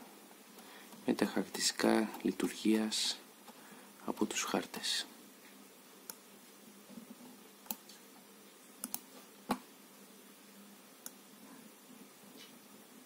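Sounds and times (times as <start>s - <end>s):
computer mouse clicks: 7.6s - 8.0s, 8.8s - 9.1s.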